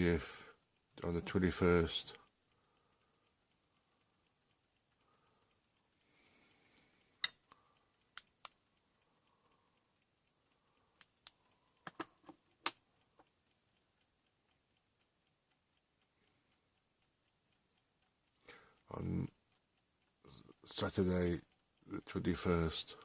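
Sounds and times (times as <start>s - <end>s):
faint light ticking: 0.0s - 23.0s
computer mouse clicking: 11.0s - 13.3s.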